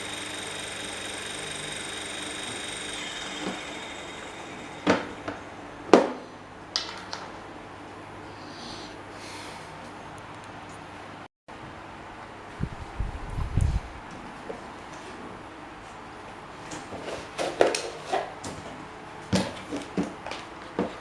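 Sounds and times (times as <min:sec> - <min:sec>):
small electric motor humming: 0:00.0 - 0:06.0.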